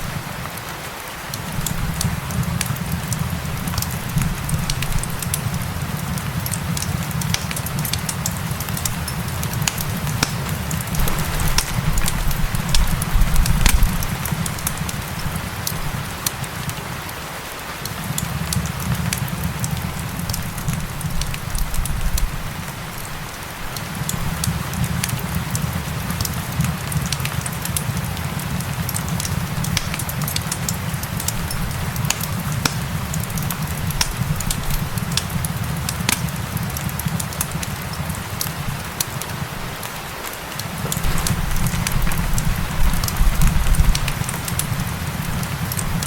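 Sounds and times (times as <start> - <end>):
steady rain: 0.0 - 46.0
wood fire crackling and popping: 0.0 - 46.0.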